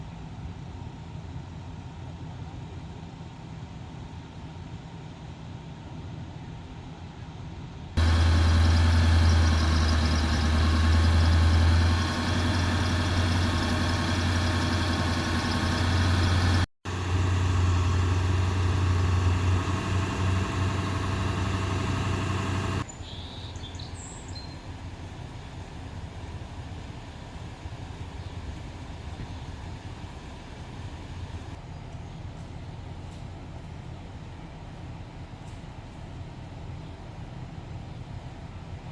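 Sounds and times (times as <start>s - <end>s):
fire truck engine running: 8.0s - 31.6s.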